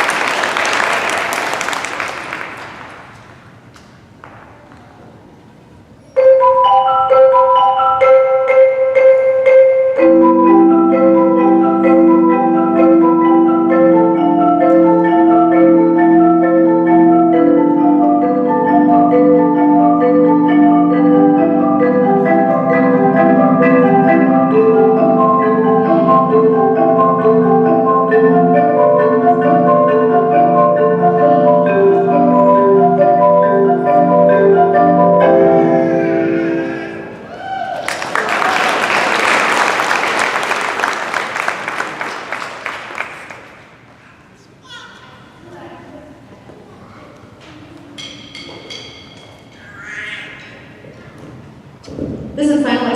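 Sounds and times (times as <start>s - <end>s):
mallet percussion ensemble: 6.2s - 37.3s, 48.0s - 49.7s.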